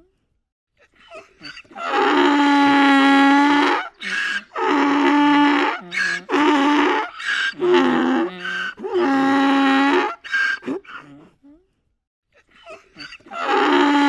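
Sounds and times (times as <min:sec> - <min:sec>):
donkey braying: 0:01.4 - 0:11.3, 0:13.0 - 0:14.0.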